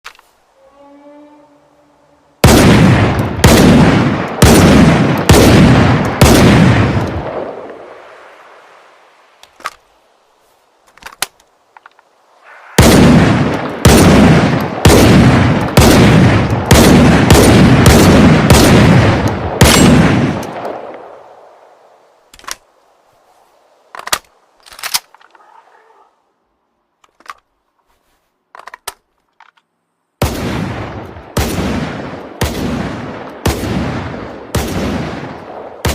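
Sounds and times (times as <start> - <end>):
shotgun firing rapidly: 2.4 - 6.9, 12.8 - 20.3.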